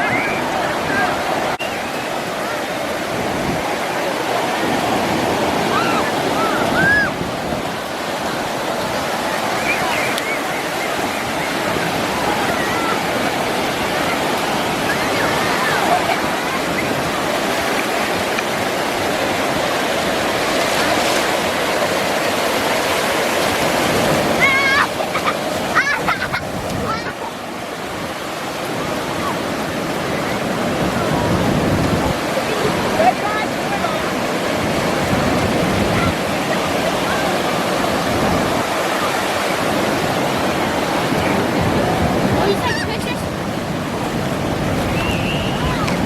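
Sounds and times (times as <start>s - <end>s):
ocean waves breaking: 0.0s - 46.0s.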